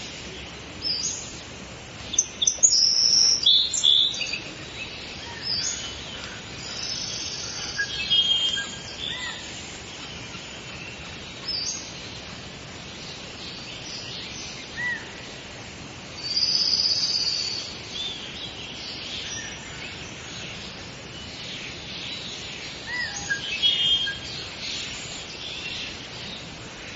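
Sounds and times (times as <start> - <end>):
birds calling and chirping: 0.0 - 26.9
steady background hiss: 0.0 - 26.9.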